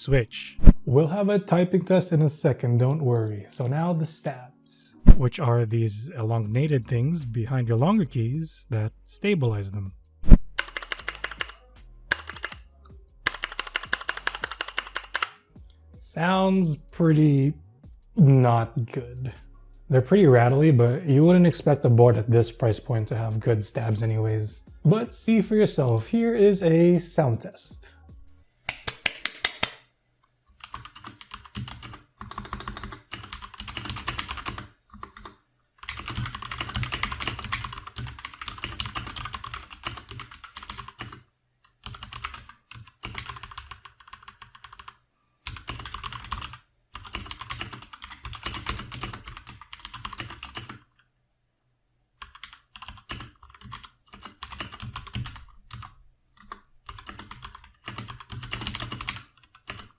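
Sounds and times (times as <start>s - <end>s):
mechanical keyboard keys clattering: 10.6s - 12.6s, 13.3s - 15.3s, 30.6s - 41.2s, 41.8s - 44.9s, 45.5s - 50.8s, 52.2s - 59.9s.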